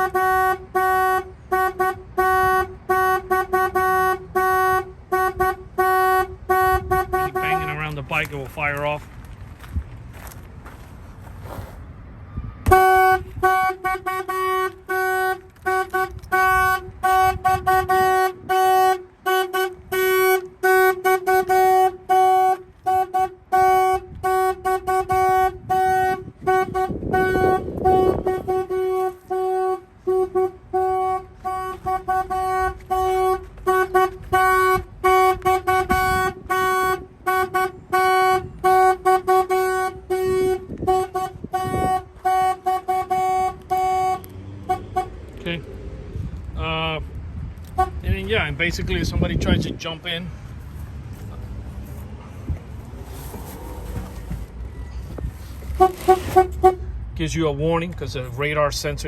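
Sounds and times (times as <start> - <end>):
car horn honking: 0.0 - 8.8, 12.6 - 45.6, 47.7 - 48.5, 52.8 - 56.9.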